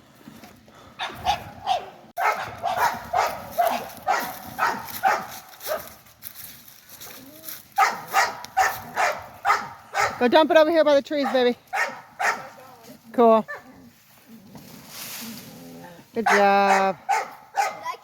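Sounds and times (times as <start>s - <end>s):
dog barking: 1.0s - 6.0s, 7.8s - 10.2s, 11.2s - 12.6s, 13.5s - 13.7s, 16.2s - 18.0s.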